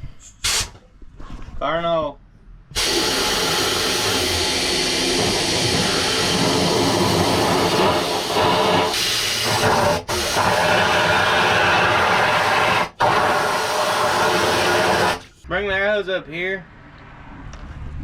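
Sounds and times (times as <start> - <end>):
air hose hissing loudly: 0.3 - 0.8, 2.8 - 15.3.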